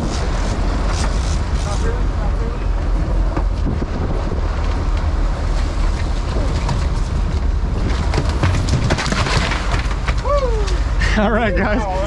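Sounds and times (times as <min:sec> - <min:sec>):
boat engine running: 0:00.0 - 0:12.0
wind buffeting microphone: 0:00.0 - 0:12.0
knocks and clatter: 0:04.6 - 0:10.8.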